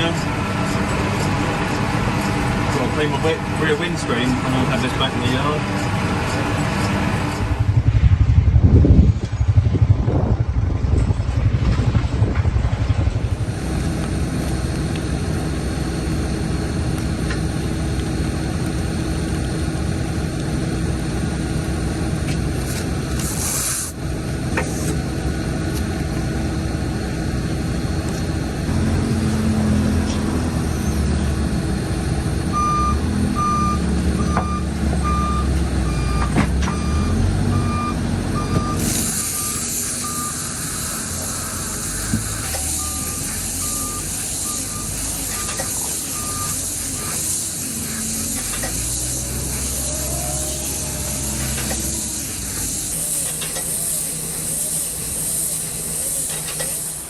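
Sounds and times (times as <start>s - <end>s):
tractor engine running: 0.0s - 57.0s
electronic beeps: 32.5s - 47.2s.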